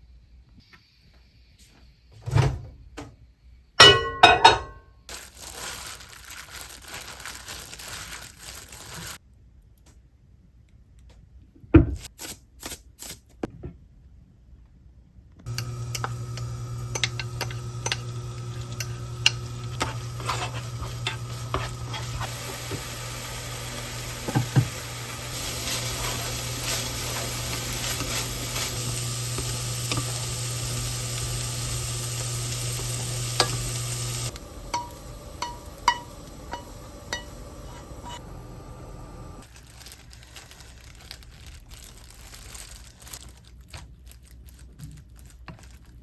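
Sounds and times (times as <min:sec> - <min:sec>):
dishes clinking: 0:03.8 - 0:04.9, 0:15.5 - 0:22.3, 0:34.7 - 0:38.2
steady low hum: 0:15.5 - 0:39.4
food sizzling in a pan: 0:15.5 - 0:39.5.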